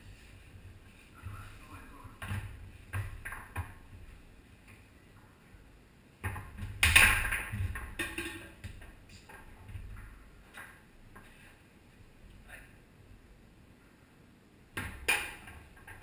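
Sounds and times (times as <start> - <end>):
foosball ball clacks: 6.2 - 11.3.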